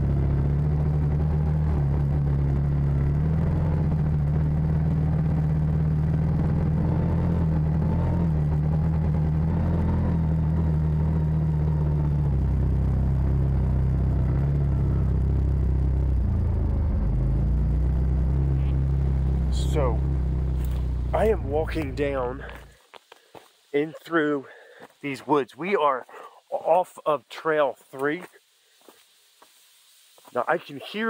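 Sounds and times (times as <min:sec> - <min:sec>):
utility vehicle engine rumbling: 0:00.0 - 0:22.8.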